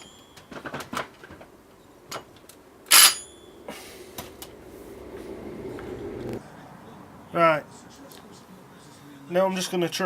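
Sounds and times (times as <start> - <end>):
handling clicks and knocks: 0.0 - 3.3
steady low hum: 0.0 - 9.0.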